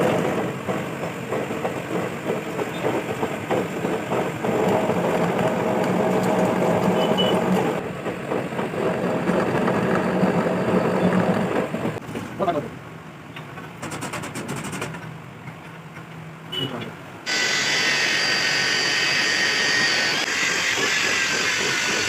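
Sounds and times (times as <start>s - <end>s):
rattly background noise: 0.0s - 12.7s
high held tone: 17.3s - 20.4s
machine humming: 17.3s - 22.0s.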